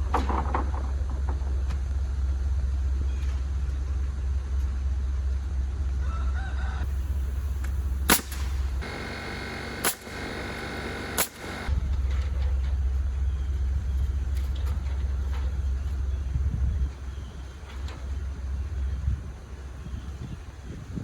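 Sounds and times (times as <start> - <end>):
rooster crowing: 6.0 - 7.1
steady low rumble: 6.8 - 21.0.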